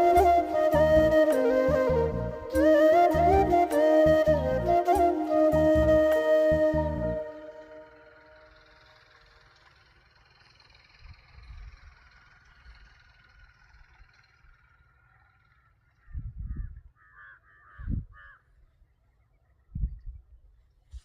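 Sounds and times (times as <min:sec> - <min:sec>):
crow cawing: 0:17.0 - 0:18.6.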